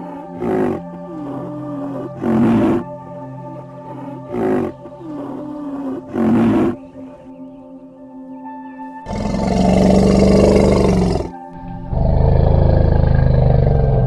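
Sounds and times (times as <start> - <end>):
large animal low calls: 0.0 - 3.0, 4.0 - 6.9, 9.1 - 14.0
background music: 0.0 - 14.0.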